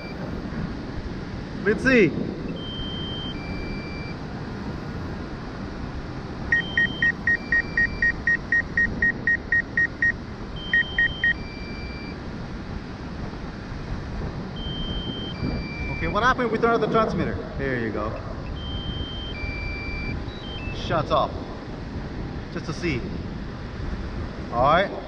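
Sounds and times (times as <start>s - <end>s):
rapid electronic beeps: 0.0s - 0.2s, 2.5s - 4.2s, 6.5s - 12.2s, 14.6s - 16.2s, 18.2s - 20.8s
wind noise on microphone: 0.0s - 25.0s.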